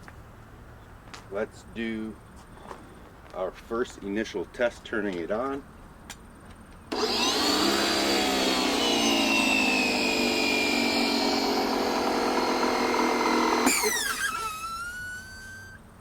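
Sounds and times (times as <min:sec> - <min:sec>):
pressure washer motor whine: 0:06.9 - 0:15.8.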